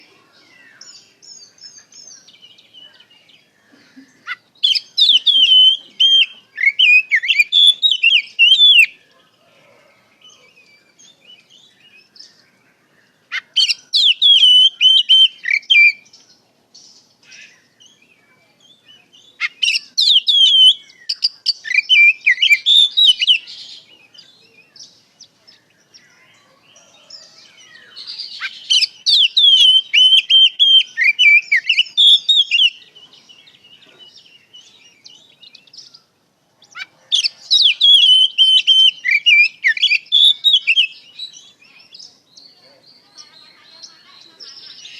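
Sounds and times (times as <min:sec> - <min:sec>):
soft bird chirps: 0:00.0 - 0:44.9
bird singing whistled phrases: 0:04.6 - 0:09.0, 0:13.6 - 0:16.1, 0:17.3 - 0:24.8, 0:27.6 - 0:32.9, 0:36.7 - 0:43.3.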